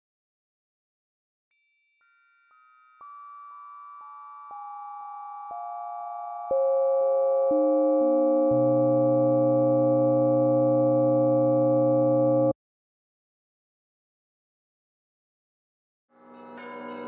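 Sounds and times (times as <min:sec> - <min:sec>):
synthesized bell-like chord: 0:03.0 - 0:12.6.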